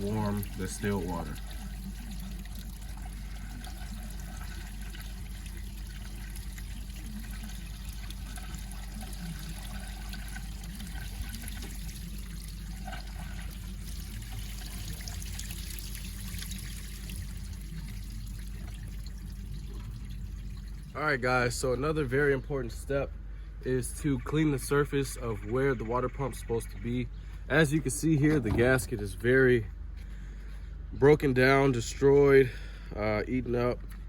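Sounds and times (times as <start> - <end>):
water flowing and trickling: 0.0 - 21.0.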